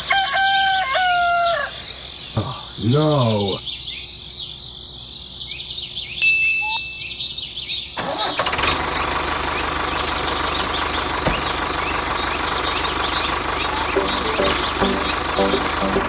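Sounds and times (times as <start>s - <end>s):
engine running with low pulsing: 8.8s - 13.9s.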